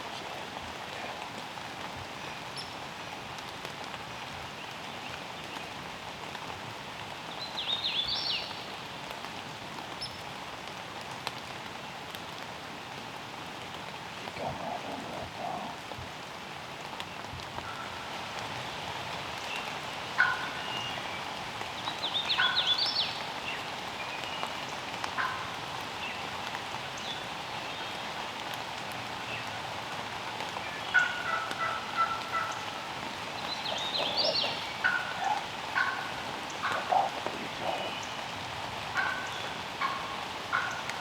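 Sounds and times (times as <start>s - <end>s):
light rain hissing: 0.0s - 41.0s
short turkey calls: 20.2s - 20.6s, 30.9s - 32.9s, 33.6s - 38.3s, 39.0s - 41.0s
turkey gobbling: 20.2s - 20.6s, 30.9s - 32.9s, 33.6s - 38.2s, 38.9s - 41.0s.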